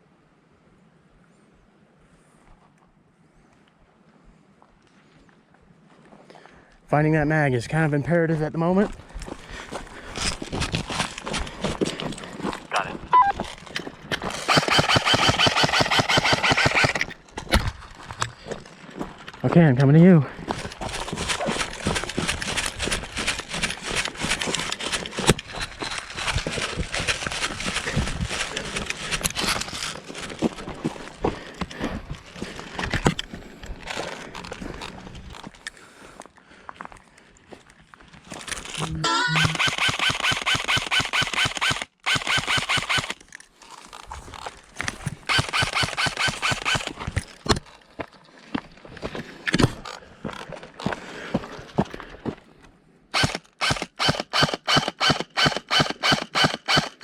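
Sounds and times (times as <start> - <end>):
running footsteps: 8.8 - 35.6
whining motor and gearbox: 14.2 - 17.2, 38.6 - 43.2, 45.2 - 47.2, 53.2 - 57.0
airsoft gun firing bursts: 14.3 - 17.1, 39.3 - 43.2, 45.3 - 47.0, 53.2 - 57.0.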